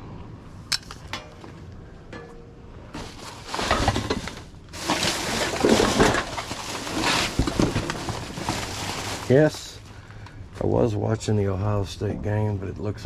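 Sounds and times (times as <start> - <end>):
rummaging through junk: 1.2 - 9.9.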